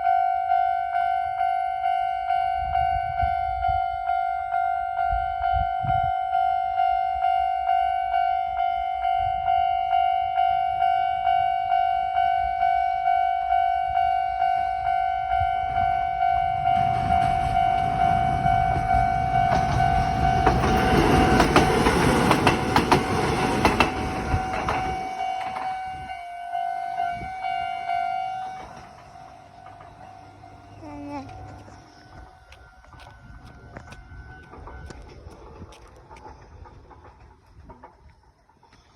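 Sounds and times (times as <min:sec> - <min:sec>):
level crossing alarm ringing: 0:00.0 - 0:35.2
train wheels clacking: 0:16.2 - 0:26.2, 0:27.0 - 0:38.9.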